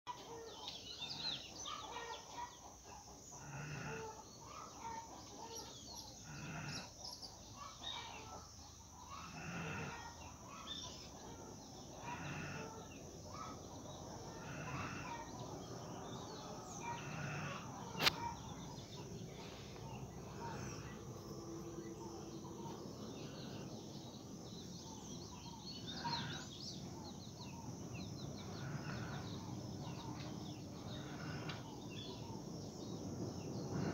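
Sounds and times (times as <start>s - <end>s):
sleeping pet snoring: 3.4s - 4.2s, 6.0s - 7.0s, 9.1s - 10.2s, 12.0s - 13.4s, 14.3s - 15.3s, 16.1s - 18.2s, 28.4s - 31.8s
sharp click: 18.0s - 18.2s.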